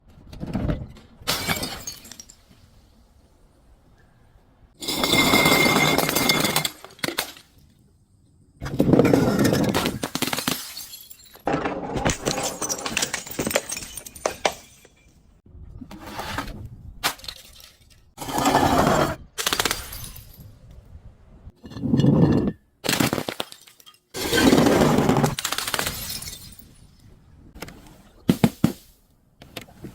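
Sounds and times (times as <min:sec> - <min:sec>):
glass bottle breaking: 0:01.3 - 0:02.4, 0:09.4 - 0:11.5, 0:25.6 - 0:26.8.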